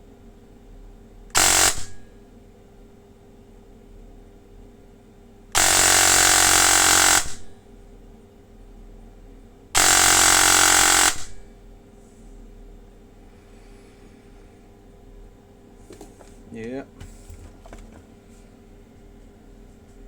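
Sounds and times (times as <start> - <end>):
electric airsoft gun full-auto bursts: 1.4 - 2.1, 5.6 - 7.5, 9.8 - 11.4.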